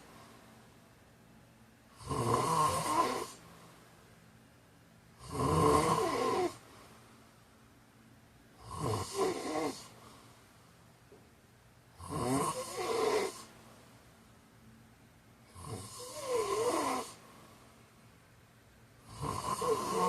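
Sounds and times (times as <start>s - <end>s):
man snoring: 2.0s - 3.4s, 5.2s - 6.6s, 8.6s - 10.0s, 12.0s - 13.5s, 15.5s - 17.2s, 19.0s - 20.0s.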